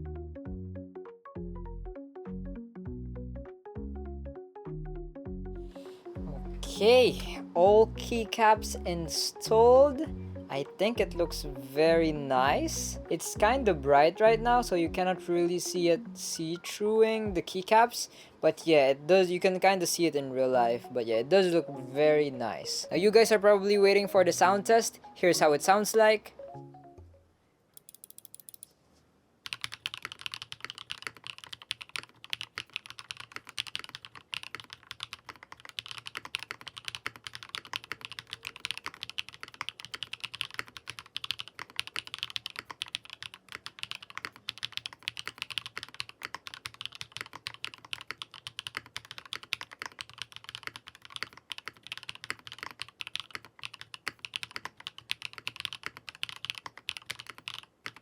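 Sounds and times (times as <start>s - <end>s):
mechanical keyboard typing: 27.8s - 28.7s, 29.4s - 58.0s.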